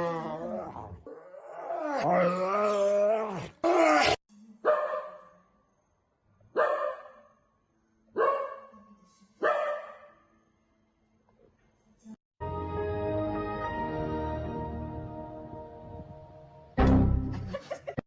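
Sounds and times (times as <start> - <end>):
dog barking: 4.6 - 5.4, 6.5 - 7.4, 8.2 - 8.8, 9.4 - 10.2.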